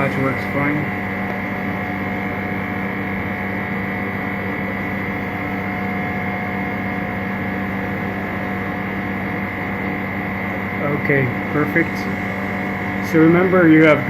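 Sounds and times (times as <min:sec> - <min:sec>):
steady machine hum: 0:00.0 - 0:14.0.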